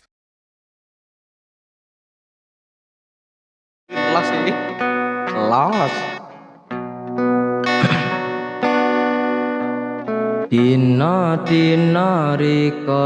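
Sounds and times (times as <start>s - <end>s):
plucked guitar: 3.9s - 13.0s
person singing: 10.5s - 13.0s.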